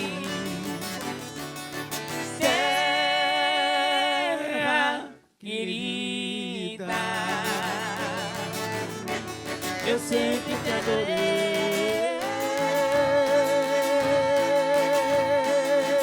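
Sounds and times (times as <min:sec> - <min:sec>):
country music with plucked strings: 0:00.0 - 0:03.3, 0:06.9 - 0:16.0.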